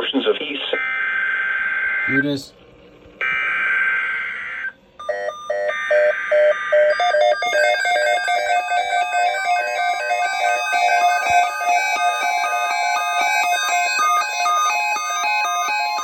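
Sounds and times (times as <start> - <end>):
electronic tone sequence: 3.2 - 16.0
rapid electronic beeps: 5.0 - 16.0.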